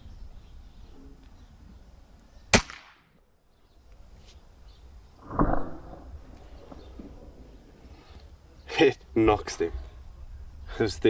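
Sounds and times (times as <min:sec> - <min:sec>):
air rifle shot crack: 0:02.5 - 0:03.2, 0:05.2 - 0:07.8
dull thud: 0:05.2 - 0:07.7.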